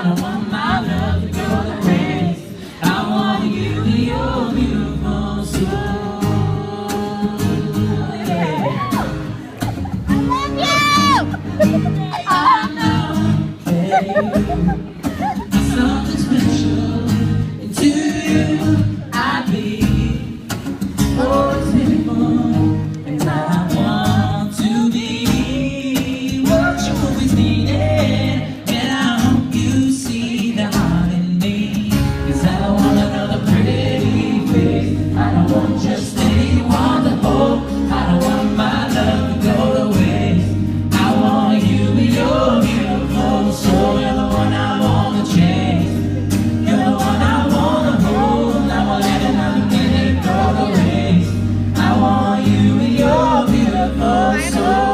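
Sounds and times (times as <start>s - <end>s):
person singing: 0.0s - 20.4s, 32.3s - 54.9s.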